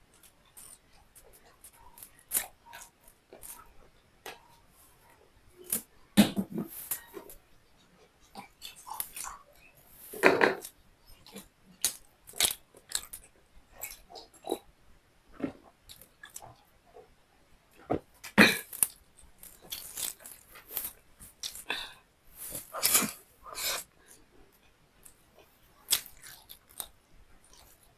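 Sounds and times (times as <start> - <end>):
person chewing and lip-smacking: 8.2 - 9.7, 10.5 - 14.7, 15.4 - 16.6, 18.2 - 21.8, 25.0 - 27.9.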